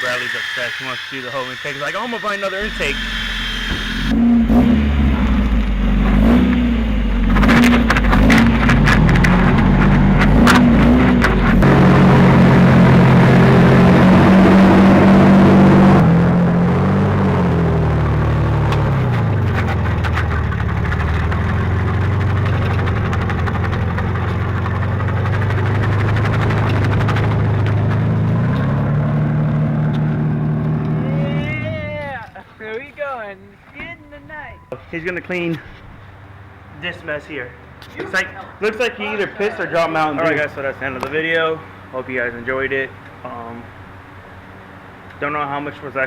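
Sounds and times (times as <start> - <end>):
rasping scrapes: 0.0 - 4.2, 18.9 - 28.6
motor running: 0.0 - 16.0
vehicle engine idling: 0.0 - 46.0.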